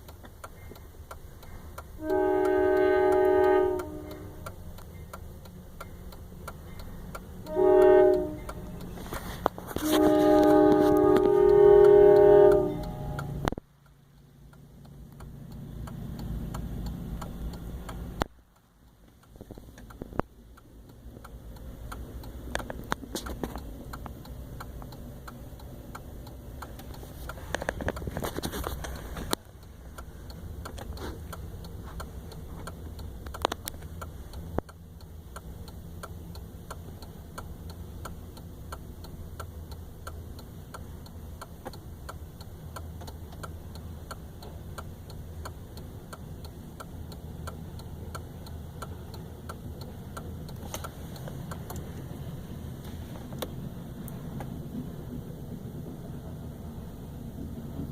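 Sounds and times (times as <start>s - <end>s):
train horn: 2.0s - 4.4s, 7.4s - 8.8s, 9.8s - 13.4s.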